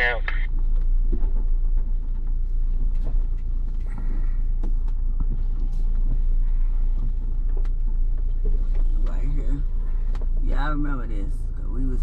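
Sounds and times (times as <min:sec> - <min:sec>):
engine and drivetrain rumble: 0:00.0 - 0:12.0.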